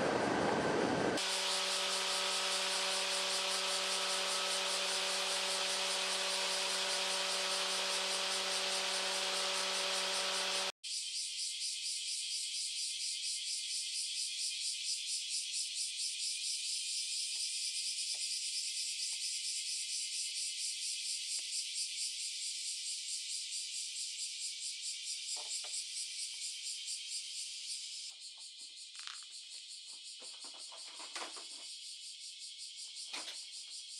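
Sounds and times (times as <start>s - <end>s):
insect-like chirping: 10.8s - 33.9s.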